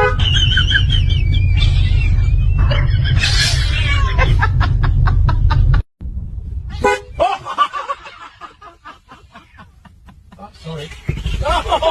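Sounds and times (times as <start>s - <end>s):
car horn toot: 0.0s - 0.3s, 6.8s - 7.2s
loud low rumble with clicks: 0.0s - 6.8s.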